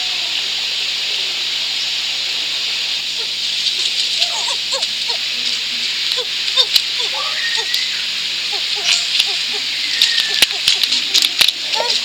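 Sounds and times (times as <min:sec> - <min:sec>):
steady hiss: 0:00.0 - 0:12.0
high squeaky animal calls: 0:03.2 - 0:05.3, 0:06.1 - 0:12.0.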